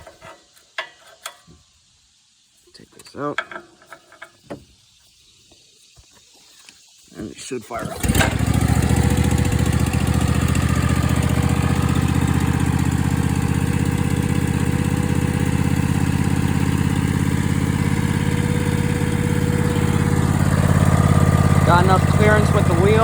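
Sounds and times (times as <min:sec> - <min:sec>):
lawn mower engine idling: 0:07.7 - 0:23.0.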